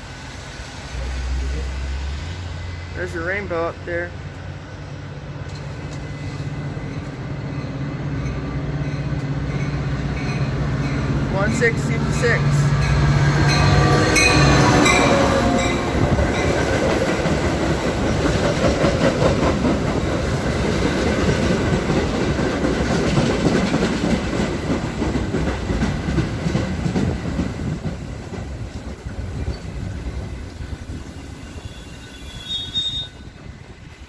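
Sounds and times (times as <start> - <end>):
train rolling past: 0.0 - 34.0
wheels clacking over rail joints: 5.4 - 31.3.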